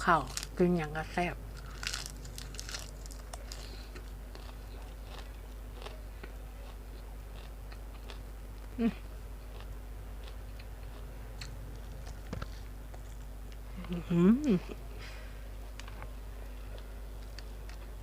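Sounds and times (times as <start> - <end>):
low hum: 0.0 - 18.0
person chewing food: 1.5 - 14.0, 16.6 - 18.0.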